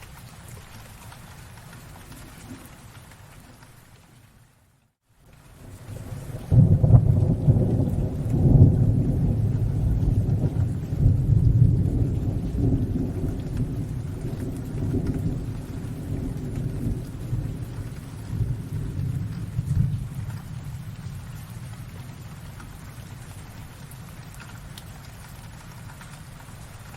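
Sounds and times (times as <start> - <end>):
steady rain: 0.0 - 26.9
thunder rumbling: 5.6 - 26.9.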